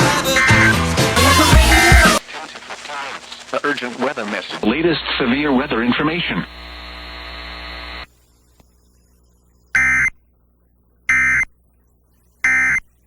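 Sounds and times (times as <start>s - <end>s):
digital data tone bursts: 0.2s - 0.8s
steady buzzing hum: 1.5s - 8.2s.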